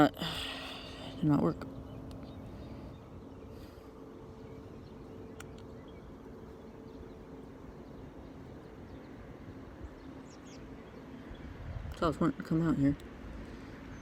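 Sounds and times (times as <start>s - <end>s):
steady hum: 0.0s - 14.0s
light click: 5.3s - 5.7s.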